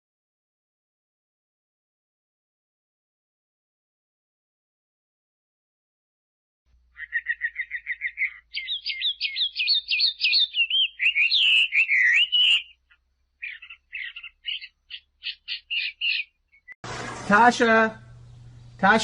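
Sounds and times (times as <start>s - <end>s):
songbird singing: 6.8s - 16.8s
bird chirps: 6.9s - 16.8s.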